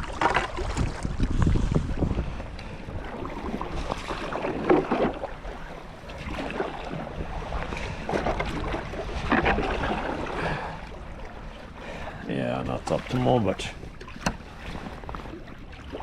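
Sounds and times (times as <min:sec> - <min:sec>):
wind noise on microphone: 0:00.0 - 0:05.1
paddle strokes splashing water: 0:00.0 - 0:16.0.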